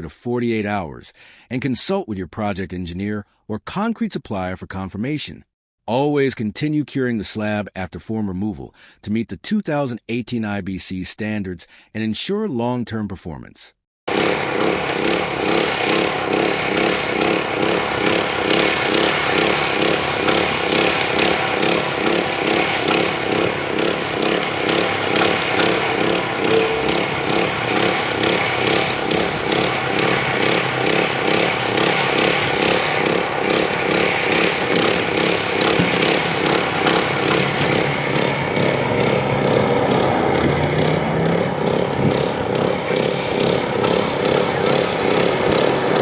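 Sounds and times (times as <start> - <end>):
motor running with fast pulse: 14.1 - 46.0.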